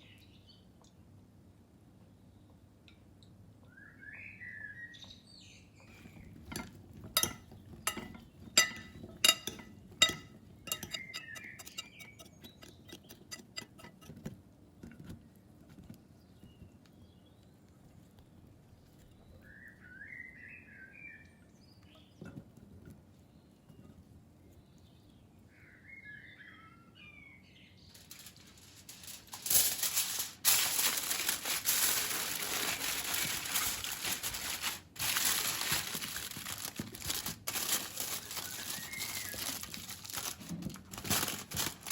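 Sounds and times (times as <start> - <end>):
kitchen knocks and clinks: 5.9 - 14.3
small bird chirping: 10.7 - 13.8, 38.1 - 39.7.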